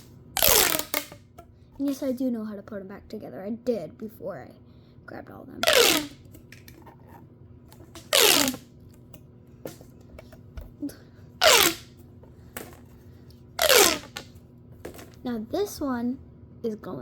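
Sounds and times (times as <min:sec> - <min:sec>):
pop tube rattling whooshes: 0:05.6 - 0:06.2, 0:08.0 - 0:08.6.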